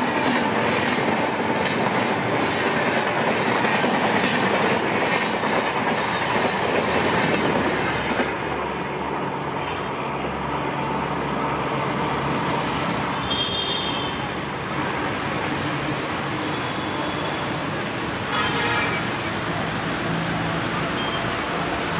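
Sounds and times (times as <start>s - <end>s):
train wheels clickety-clack: 0.0s - 8.7s.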